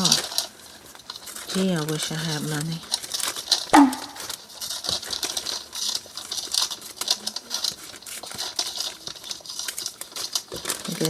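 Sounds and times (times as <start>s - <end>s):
paper rustling: 0.0s - 11.0s
scissors snipping paper: 0.0s - 11.0s
sharp squeak falling in pitch: 3.8s - 4.2s.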